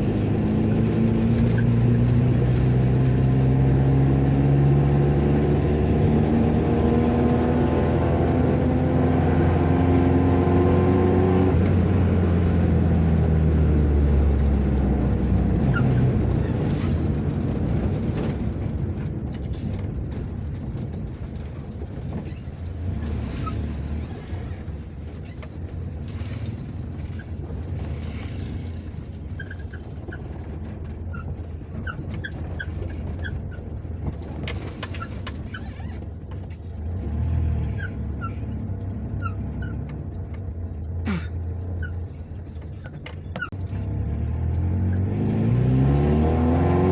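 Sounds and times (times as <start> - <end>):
car engine accelerating: 0.0 - 19.1, 20.1 - 46.9
road noise: 0.0 - 46.9.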